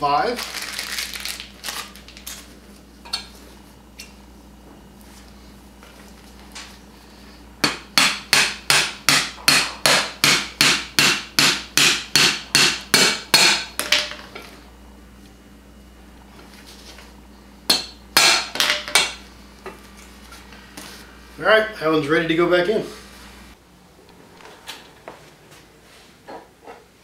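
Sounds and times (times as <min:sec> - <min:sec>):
hammer striking metal sleeve: 0:07.6 - 0:14.1.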